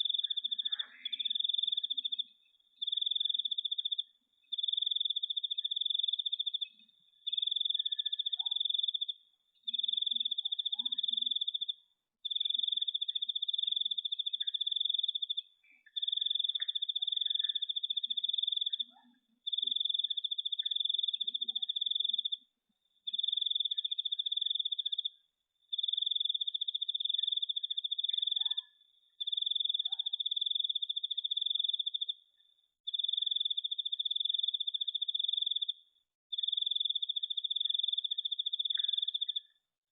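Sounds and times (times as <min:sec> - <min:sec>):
cricket-like insect trilling: 0:07.3 - 0:22.4, 0:23.1 - 0:32.2, 0:32.9 - 0:39.6.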